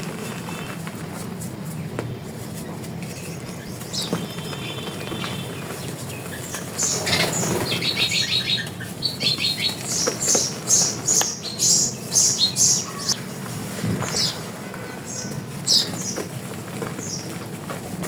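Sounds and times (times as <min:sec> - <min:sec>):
small birds chirping: 0:00.0 - 0:13.4, 0:14.0 - 0:17.6
bird trill: 0:03.1 - 0:13.2, 0:14.0 - 0:16.3.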